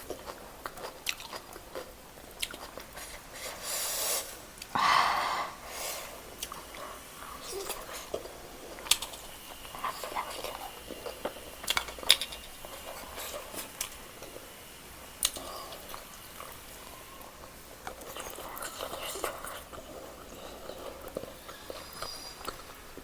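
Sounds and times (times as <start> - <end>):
person chewing and biting: 0.1 - 3.2.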